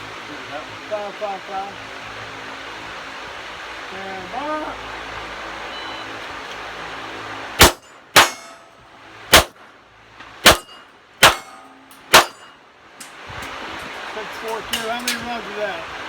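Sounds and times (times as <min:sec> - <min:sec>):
pistol shots: 0:07.6 - 0:08.7, 0:09.3 - 0:09.6, 0:10.4 - 0:12.5
metallic ring: 0:07.6 - 0:08.8, 0:10.5 - 0:12.6.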